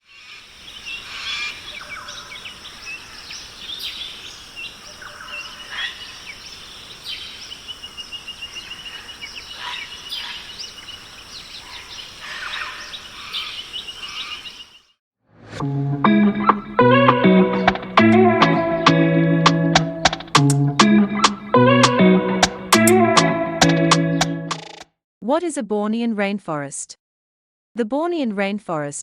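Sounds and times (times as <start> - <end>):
birds calling and chirping: 0.1 - 14.9
rapid trill: 16.2 - 24.8.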